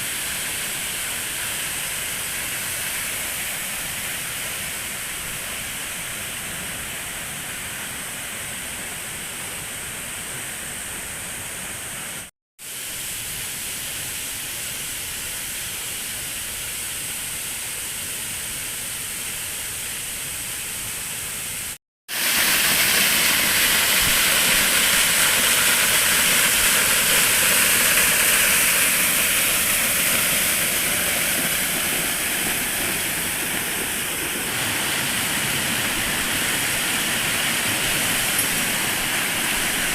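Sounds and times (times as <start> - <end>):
waterfall rushing: 0.0 - 12.2, 22.1 - 39.9.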